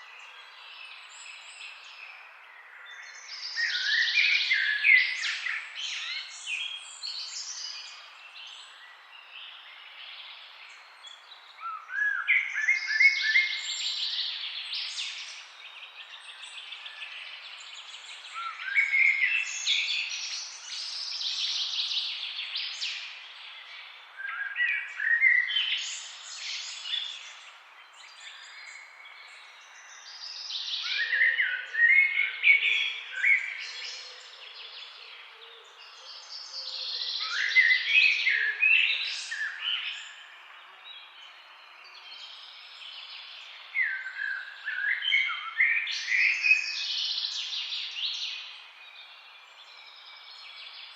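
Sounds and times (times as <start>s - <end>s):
songbirds singing: 0.0s - 50.9s.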